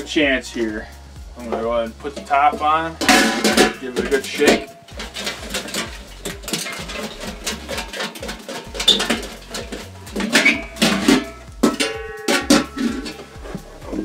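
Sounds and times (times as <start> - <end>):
paper slips rattling in container: 1.5 - 11.9.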